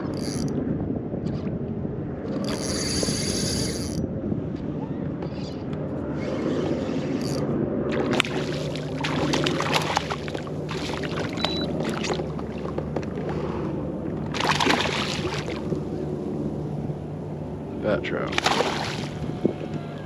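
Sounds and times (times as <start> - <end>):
steady low hum: 0.0 - 20.0
water sloshing and splashing: 7.9 - 16.8, 18.2 - 19.7.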